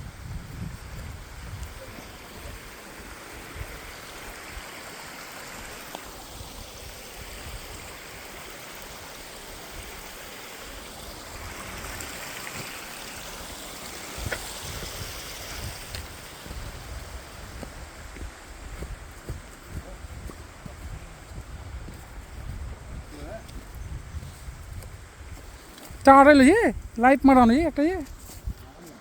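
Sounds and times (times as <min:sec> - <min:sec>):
wind rumbling on microphone: 0:00.0 - 0:04.6, 0:09.6 - 0:29.0
waterfall rushing: 0:01.6 - 0:17.6.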